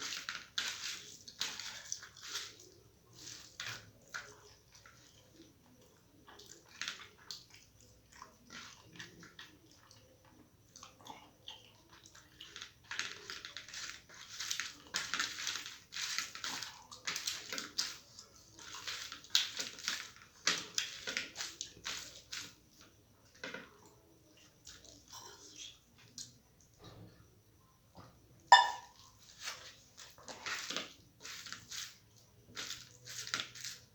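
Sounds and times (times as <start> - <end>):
person chewing with wet mouth sounds: 0.0 - 22.6.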